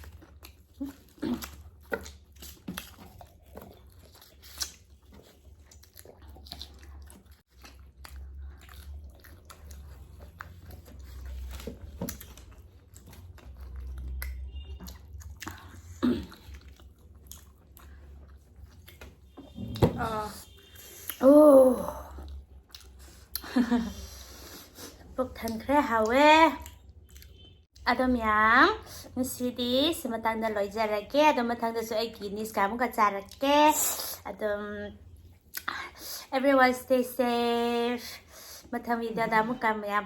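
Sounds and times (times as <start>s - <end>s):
chewing and crunching fried chicken: 0.0s - 19.4s, 22.0s - 29.4s.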